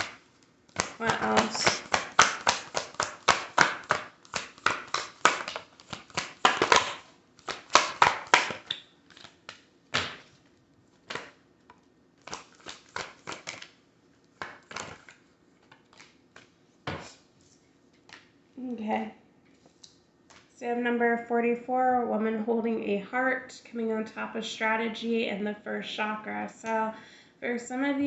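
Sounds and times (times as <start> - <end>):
cards being shuffled: 0.0 - 18.3.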